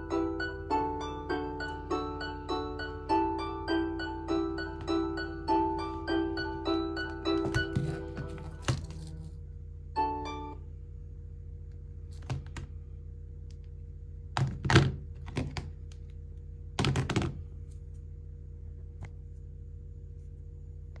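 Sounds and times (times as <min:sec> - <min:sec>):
phone ringtone: 0:00.0 - 0:08.8, 0:10.0 - 0:10.6
steady low hum: 0:00.0 - 0:21.0
knocks and clicks: 0:07.0 - 0:09.0.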